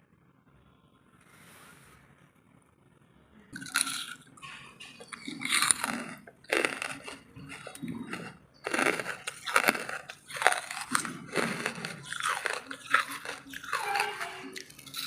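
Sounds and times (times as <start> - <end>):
crunching wood charcoal: 3.6 - 15.0.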